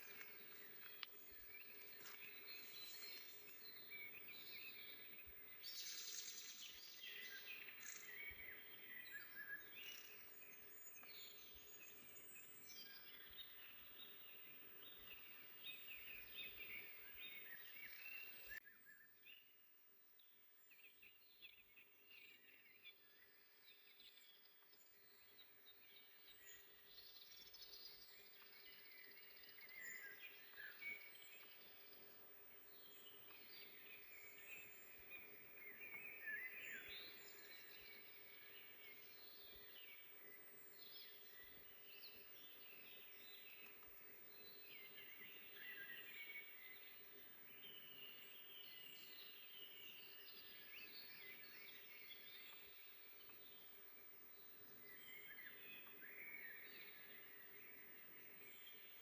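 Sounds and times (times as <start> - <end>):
background hiss: 0.0 - 18.6, 24.0 - 59.0
small birds singing: 0.0 - 59.0.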